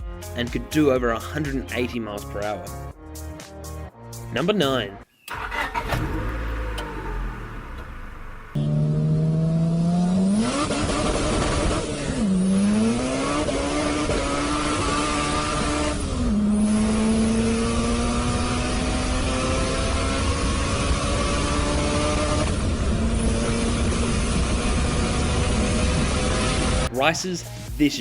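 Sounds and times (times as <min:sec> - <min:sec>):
car engine accelerating hard: 0:05.3 - 0:26.9.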